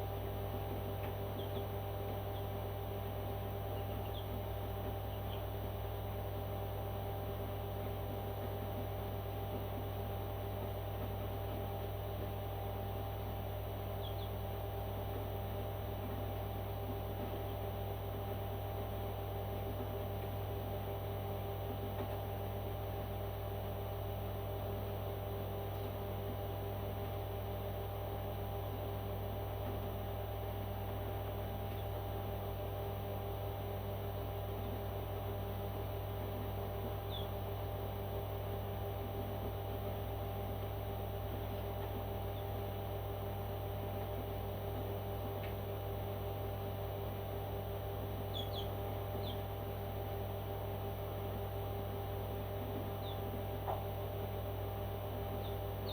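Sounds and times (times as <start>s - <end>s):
low electrical hum with tones: 0.0s - 55.9s
faint high chirps: 48.3s - 49.4s.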